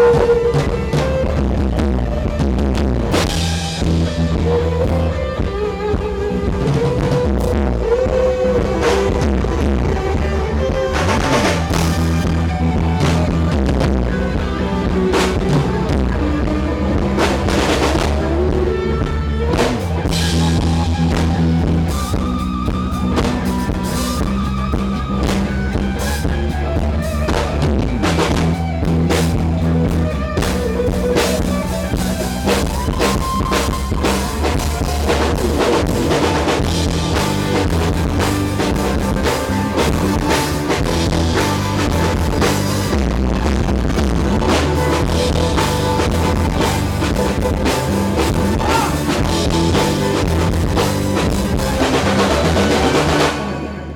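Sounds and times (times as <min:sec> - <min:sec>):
drum kit with cymbal crashes: 0:00.0 - 0:05.6, 0:16.9 - 0:18.6, 0:19.5 - 0:53.7
bass notes: 0:00.0 - 0:53.9
guitar: 0:00.0 - 0:53.9.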